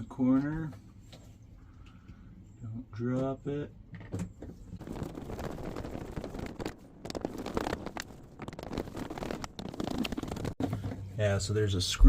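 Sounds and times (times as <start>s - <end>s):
scraping and crackling plastic: 4.7s - 11.0s.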